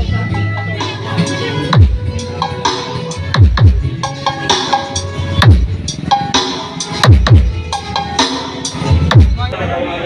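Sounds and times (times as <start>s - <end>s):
electronic dance music: 0.0s - 9.9s.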